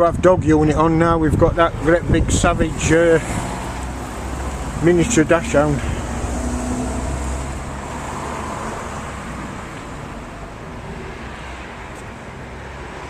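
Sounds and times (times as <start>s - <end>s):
passing vehicles rumbling: 0.0s - 13.0s.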